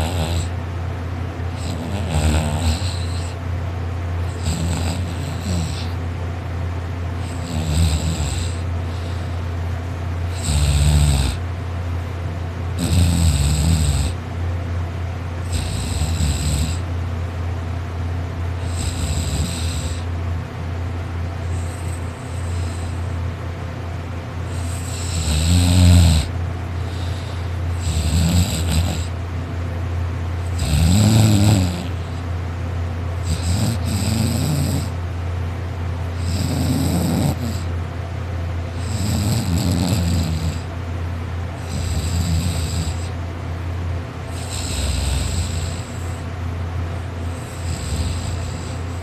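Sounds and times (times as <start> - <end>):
man snoring loudly: 0.0 - 0.6, 1.6 - 3.4, 4.2 - 6.0, 7.2 - 9.4, 10.3 - 11.4, 12.8 - 14.2, 15.4 - 16.9, 18.6 - 20.1, 24.5 - 29.2, 30.5 - 32.2, 33.2 - 35.0, 36.2 - 37.7, 38.8 - 40.7, 41.6 - 43.2, 44.3 - 46.3, 47.3 - 49.0
steady low hum: 0.0 - 49.0.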